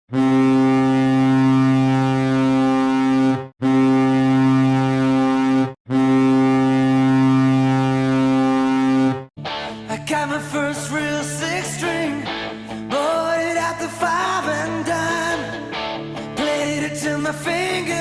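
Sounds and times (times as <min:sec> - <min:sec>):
goal horn blasts: 0:00.1 - 0:09.3.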